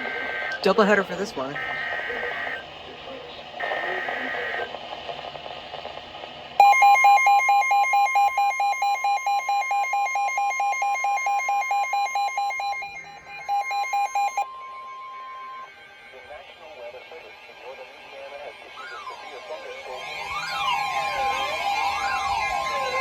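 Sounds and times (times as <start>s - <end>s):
rapidly pulsing alarm beep: 0.0s - 2.6s, 6.6s - 15.7s
screechy digital data burst: 0.0s - 2.6s
steady warning alarm tone: 0.0s - 2.6s, 6.6s - 16.3s.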